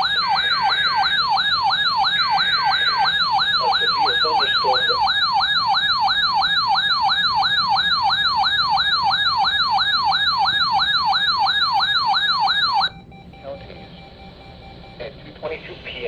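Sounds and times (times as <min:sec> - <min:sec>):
electronic siren alert tone: 0:00.0 - 0:15.2.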